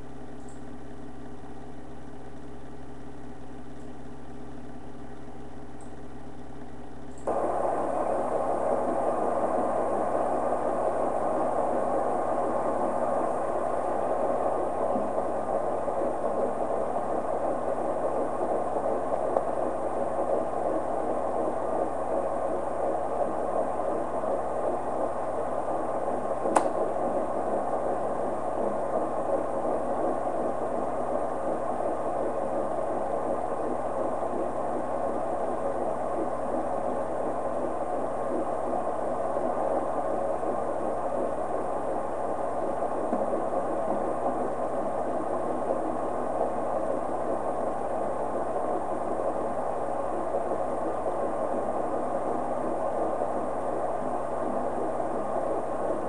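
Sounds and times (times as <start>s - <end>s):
doppler speaker hiss: 0.0s - 56.0s
faint fetal heartbeat: 7.2s - 56.0s
sharp click: 26.5s - 26.8s.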